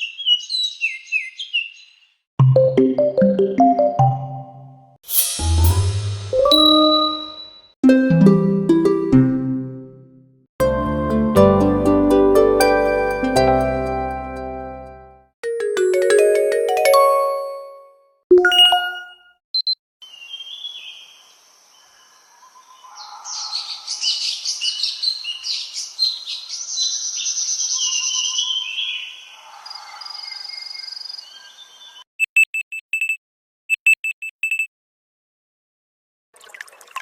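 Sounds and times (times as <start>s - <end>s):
short high electronic beeps: 5.1s - 7.7s, 18.4s - 19.8s, 32.2s - 34.7s
birdsong ringtone: 32.2s - 34.7s.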